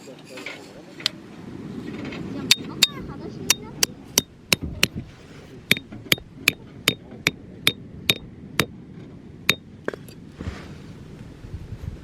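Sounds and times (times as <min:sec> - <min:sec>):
hammer striking metal: 0:02.5 - 0:05.0, 0:05.7 - 0:08.7.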